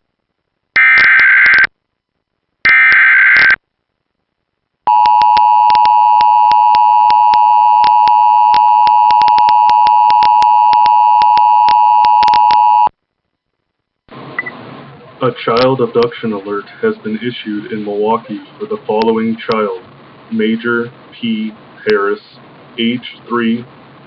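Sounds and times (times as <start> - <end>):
steady attention tone: 14.1 - 24.0.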